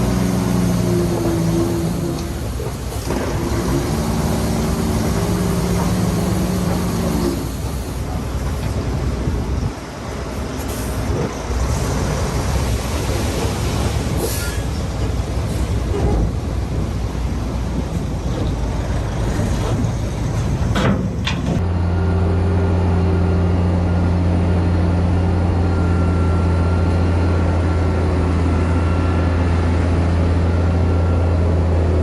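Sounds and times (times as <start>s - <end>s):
heavy diesel machinery rumbling: 0.0s - 32.0s
pitched engine drone: 21.6s - 32.0s.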